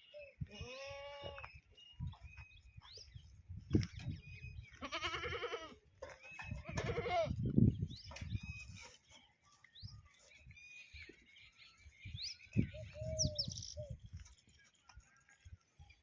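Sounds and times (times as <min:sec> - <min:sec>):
goats bleating: 0:04.7 - 0:05.8, 0:06.6 - 0:07.4.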